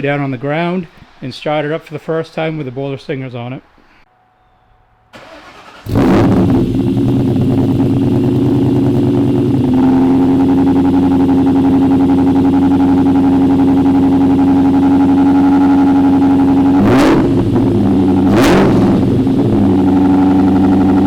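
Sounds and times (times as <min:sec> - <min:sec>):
car engine cranking and starting: 0:05.2 - 0:21.0
car engine idling: 0:05.2 - 0:21.0.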